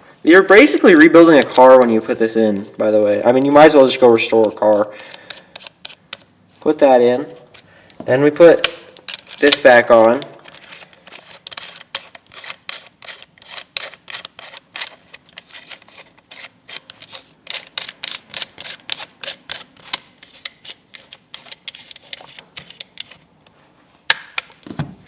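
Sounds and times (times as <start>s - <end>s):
metal tool parts clicking: 8.6s - 23.2s.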